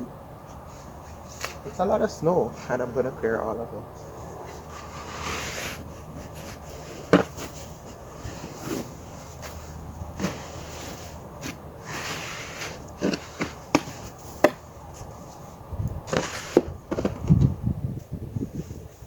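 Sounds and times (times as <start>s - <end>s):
shovel scraping snow: 4.4s - 15.4s, 16.0s - 17.4s.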